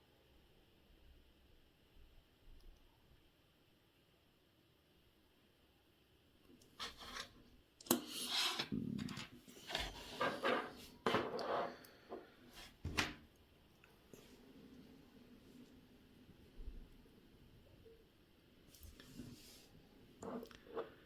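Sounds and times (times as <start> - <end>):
rubbing and scraping noises: 6.7 - 13.0.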